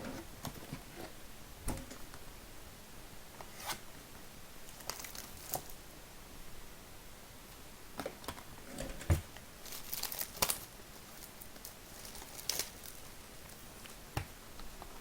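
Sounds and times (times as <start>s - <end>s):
wrapping tearing and crinkling: 4.7s - 5.7s, 9.6s - 14.0s
loud ripping of wrapping: 4.8s - 5.7s, 9.6s - 13.1s.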